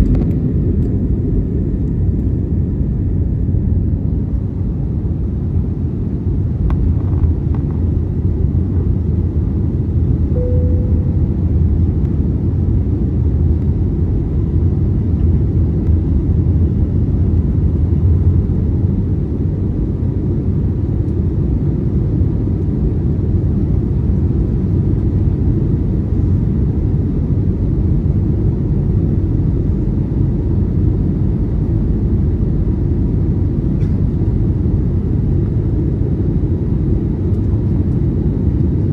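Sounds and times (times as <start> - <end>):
aircraft cabin engine rumble: 0.0 - 38.9
short tone: 10.3 - 11.8.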